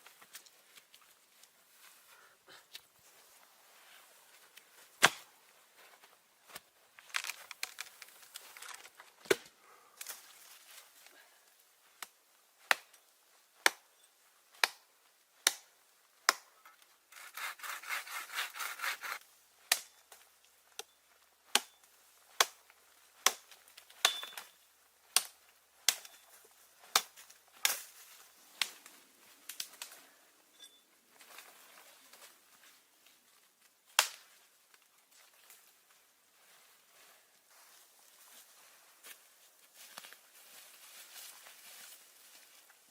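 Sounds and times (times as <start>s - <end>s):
fast sawing strokes: 17.2s - 19.2s.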